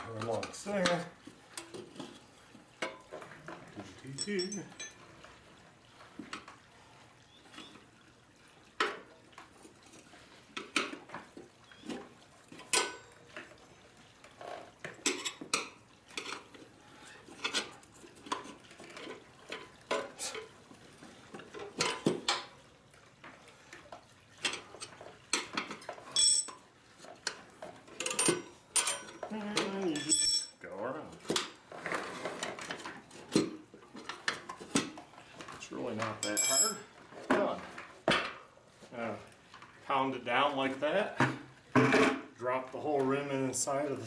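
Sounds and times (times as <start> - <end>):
tire irons clinking on wheel rim: 26.0 - 26.7, 36.1 - 37.0.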